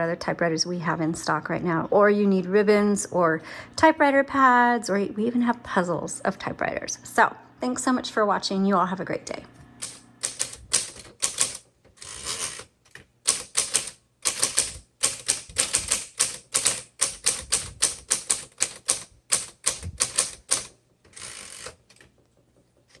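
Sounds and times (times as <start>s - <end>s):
typewriter key strikes: 9.8s - 12.6s, 13.3s - 22.0s
typewriter rasping: 9.8s - 22.2s.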